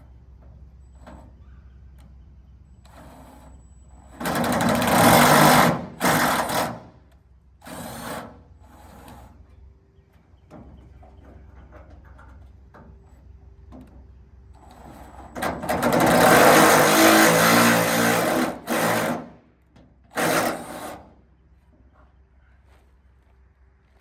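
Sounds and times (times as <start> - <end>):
power tool motor running: 4.2 - 6.8, 15.9 - 19.3, 20.1 - 21.1.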